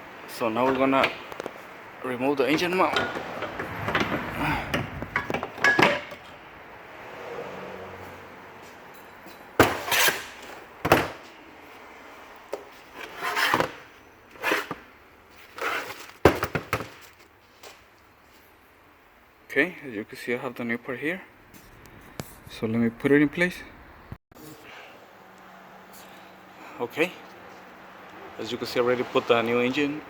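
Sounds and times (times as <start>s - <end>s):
tools and metal parts clanking: 2.4s - 6.4s.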